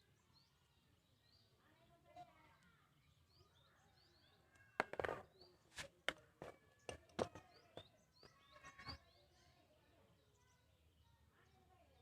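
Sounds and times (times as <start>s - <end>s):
faint bird chirps: 6.7s - 12.0s.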